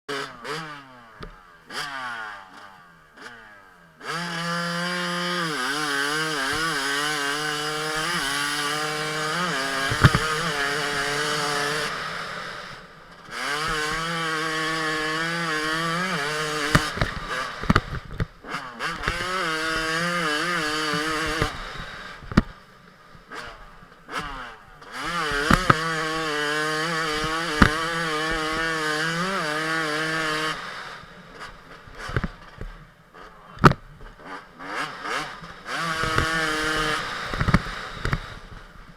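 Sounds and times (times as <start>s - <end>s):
motorcycle engine at high revs: 0.0s - 38.9s
sharp clicks: 16.6s - 19.3s, 24.2s - 25.9s, 33.6s - 34.2s.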